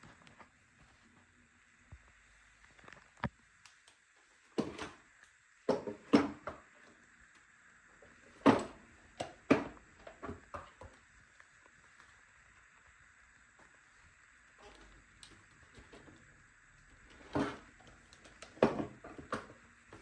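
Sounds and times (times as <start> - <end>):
vacuum cleaner clunking and rattling: 18.3 - 20.0.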